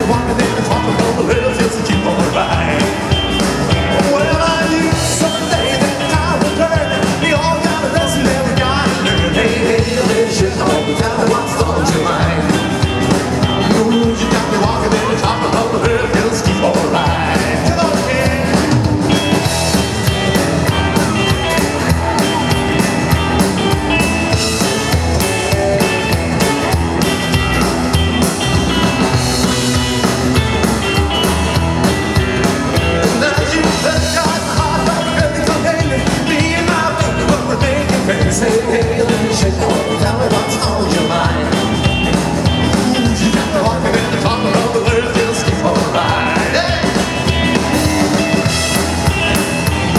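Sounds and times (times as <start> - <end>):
rock and roll band playing live: 0.0 - 49.9.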